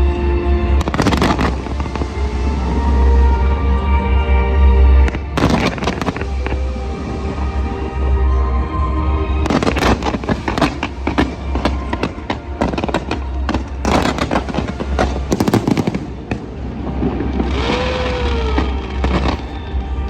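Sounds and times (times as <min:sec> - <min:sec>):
fireworks crackling: 0:00.7 - 0:03.8, 0:05.0 - 0:08.5, 0:09.3 - 0:20.0.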